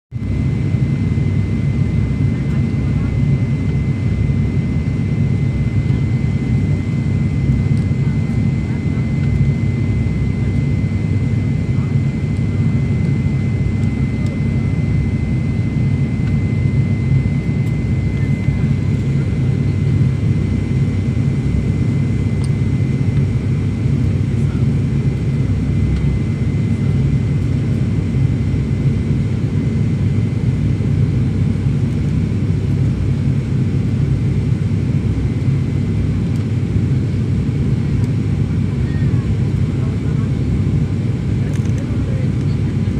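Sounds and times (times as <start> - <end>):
turboprop engine drone in cabin: 0.1 - 42.9.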